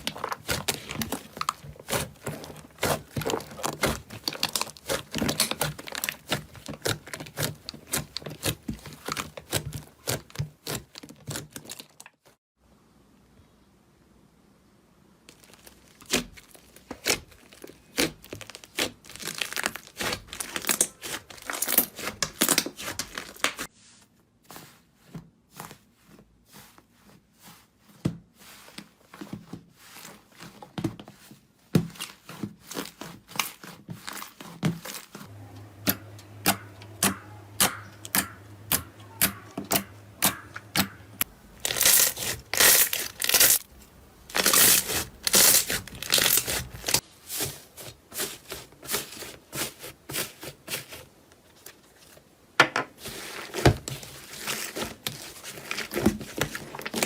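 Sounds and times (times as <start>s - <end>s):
slime crackling and popping: 0.0s - 12.1s, 15.3s - 23.7s, 39.8s - 47.0s.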